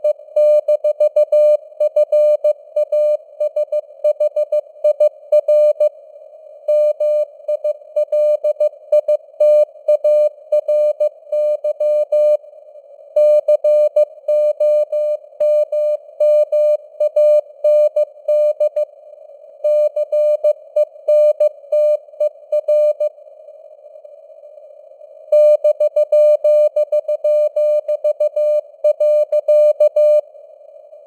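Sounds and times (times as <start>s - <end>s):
morse code beeps: 0.0s - 5.9s, 19.7s - 23.1s, 25.4s - 30.2s.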